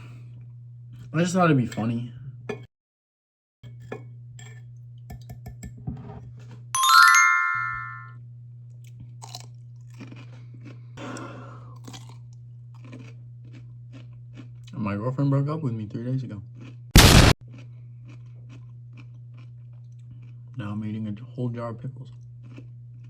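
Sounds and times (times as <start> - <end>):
bright chime: 6.8 - 8.1
crunching and chewing pickles: 8.7 - 23.0.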